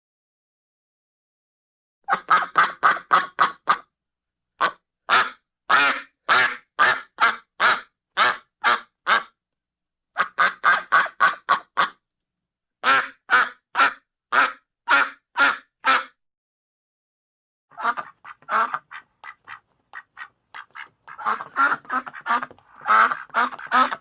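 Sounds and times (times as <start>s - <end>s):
duck quacking: 2.1s - 3.9s, 4.6s - 9.4s, 10.2s - 12.0s, 12.8s - 16.2s, 17.7s - 24.0s.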